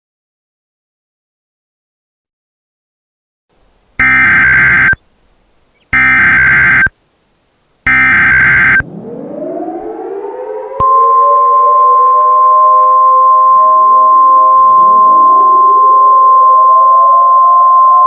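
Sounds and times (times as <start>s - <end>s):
buzzy digital data tones: 4.0s - 5.0s, 5.8s - 6.9s, 7.9s - 8.9s, 10.8s - 18.0s
siren-like wail rising in pitch: 4.0s - 5.0s, 6.0s - 6.9s, 7.9s - 18.0s
steady high alert tone: 4.0s - 5.0s, 6.0s - 6.9s, 7.9s - 18.0s.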